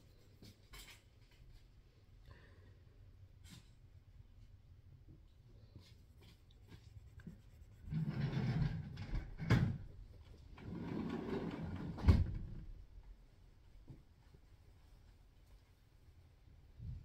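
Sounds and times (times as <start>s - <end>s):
scrubbing on a hard surface: 5.9s - 8.7s.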